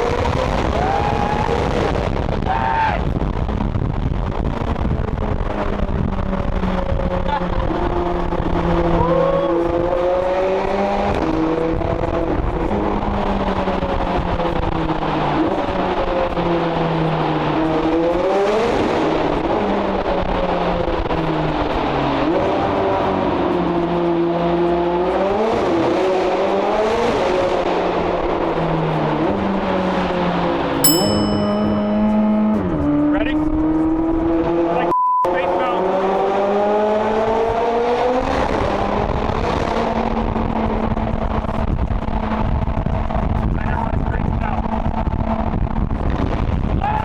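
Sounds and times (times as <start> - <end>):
sports car engine revving: 35.8 - 41.3.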